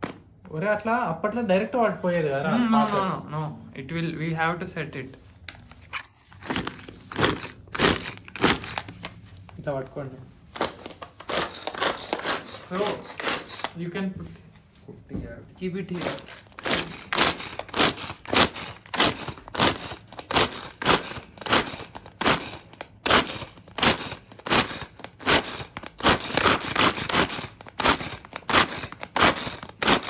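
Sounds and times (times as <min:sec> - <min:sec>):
chopper crunching onions: 0:06.2 - 0:09.1, 0:15.9 - 0:30.0.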